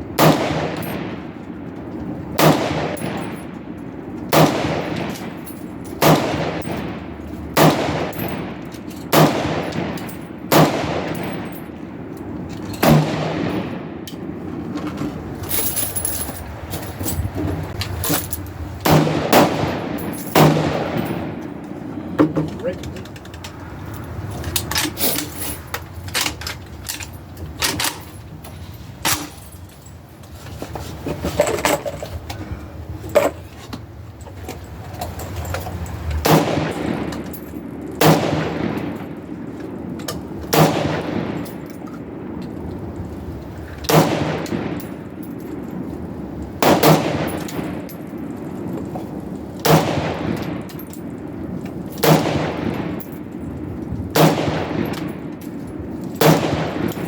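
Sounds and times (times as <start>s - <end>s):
rifle shots echoing: 0.0s - 14.5s, 18.8s - 22.2s, 36.2s - 42.6s, 43.9s - 57.0s.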